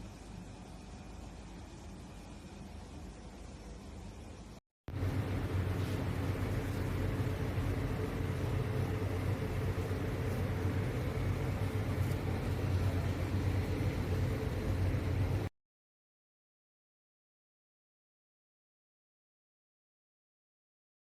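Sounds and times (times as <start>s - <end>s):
electric kettle heating water: 0.0s - 15.5s.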